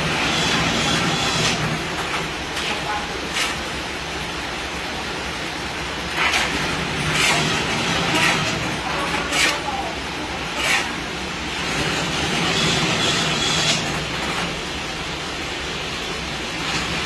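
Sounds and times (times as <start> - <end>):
machine humming: 0.0 - 17.0
sharp rasping strokes: 6.2 - 9.7, 10.4 - 11.0.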